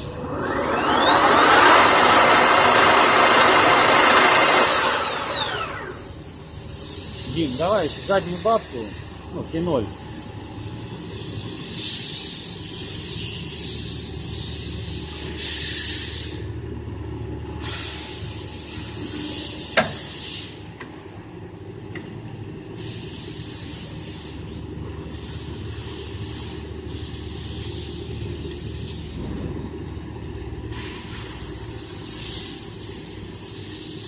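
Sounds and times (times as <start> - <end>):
lathe humming: 0.0 - 6.4
hiss: 4.7 - 8.9, 11.1 - 16.4, 17.6 - 20.6, 22.8 - 24.4, 25.1 - 28.1, 30.7 - 34.0.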